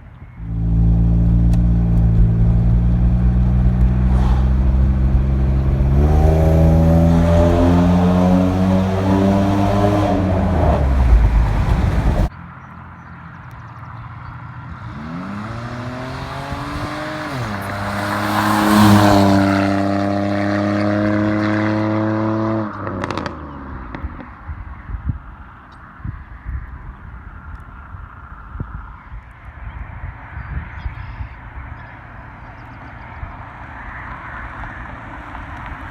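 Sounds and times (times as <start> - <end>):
loud car exhaust revving: 0.4 - 12.3
exhaust pops: 0.5 - 7.6, 9.8 - 12.3.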